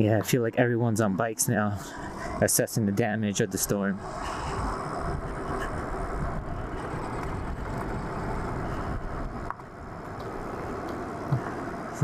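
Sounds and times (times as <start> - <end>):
tyre noise: 1.9 - 12.0
wind on microphone: 4.0 - 12.0.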